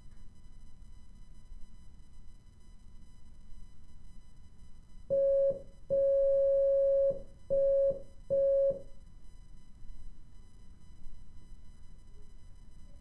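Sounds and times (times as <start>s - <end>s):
morse code beeps: 5.1s - 8.8s.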